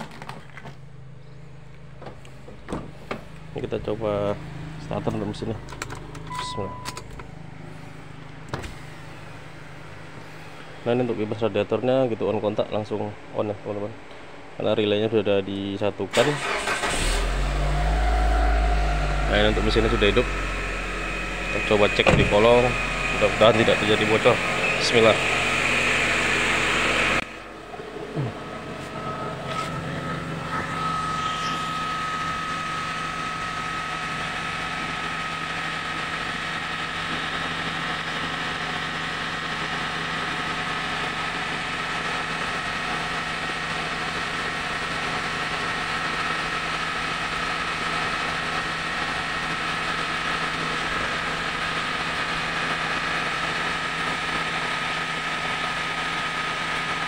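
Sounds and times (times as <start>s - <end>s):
car engine idling: 0.5s - 11.0s, 16.3s - 57.0s
high whine: 17.2s - 37.4s.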